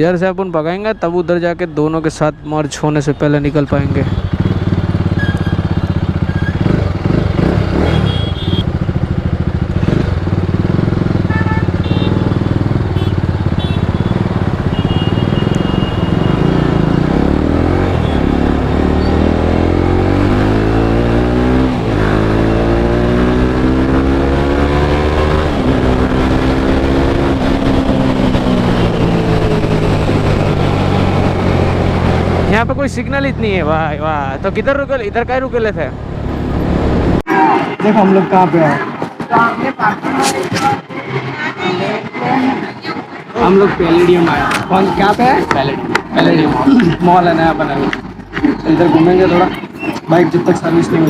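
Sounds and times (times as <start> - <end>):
motorcycle engine running: 3.9 - 36.0.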